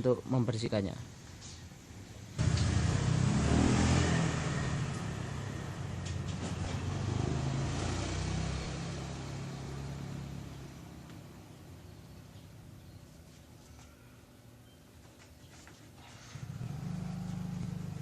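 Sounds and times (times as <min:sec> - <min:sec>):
motor engine running: 0:02.4 - 0:11.3, 0:16.2 - 0:18.0.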